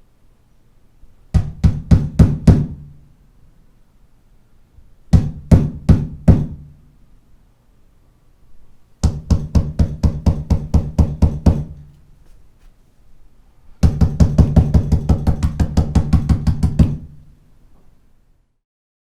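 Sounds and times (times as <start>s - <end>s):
rapid knocking on door: 1.3s - 2.8s, 5.1s - 6.7s, 9.0s - 11.9s, 13.8s - 17.1s.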